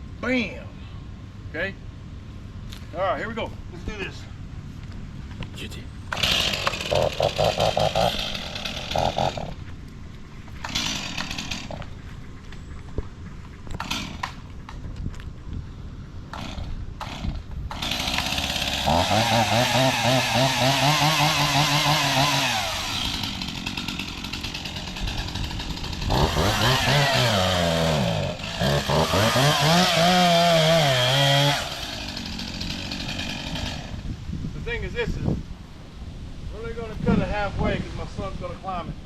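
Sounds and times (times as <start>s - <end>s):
chainsaw cutting tree trunk: 6.1s - 9.6s, 10.6s - 12.0s, 13.7s - 14.5s, 16.3s - 34.1s.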